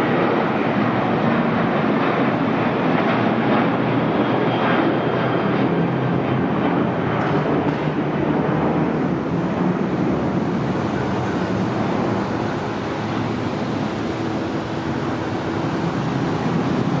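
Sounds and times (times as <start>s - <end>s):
jet engines rumbling: 0.0s - 17.0s.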